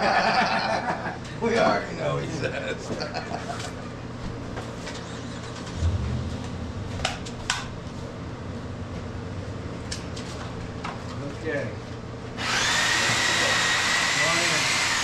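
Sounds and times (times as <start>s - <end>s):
low mechanical hum: 0.0s - 13.4s
low thump: 5.8s - 8.3s.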